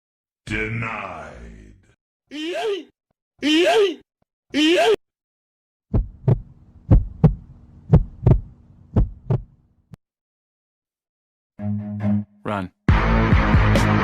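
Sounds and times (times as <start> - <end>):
heartbeat double thumps: 5.9 - 9.6.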